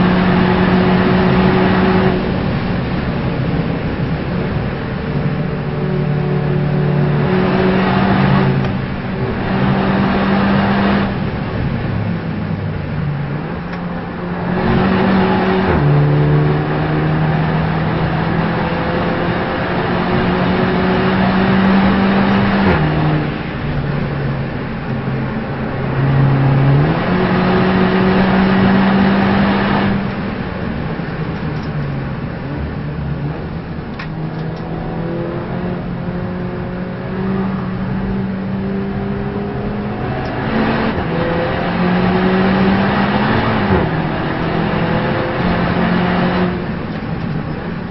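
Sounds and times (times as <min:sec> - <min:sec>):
constant rushing noise: 0:00.0 - 0:47.9
race car engine shifting gears: 0:13.6 - 0:32.4, 0:33.1 - 0:47.9.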